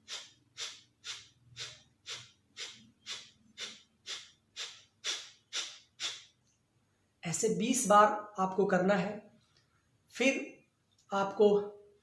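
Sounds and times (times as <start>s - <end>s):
sharp nasal exhalations: 0.0s - 6.4s.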